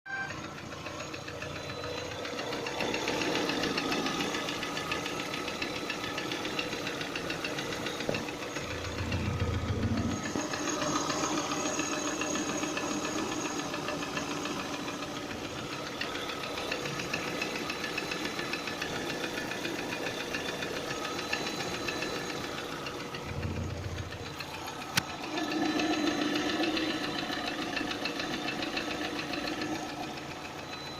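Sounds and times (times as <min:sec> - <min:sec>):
car engine running: 0:00.1 - 0:30.9.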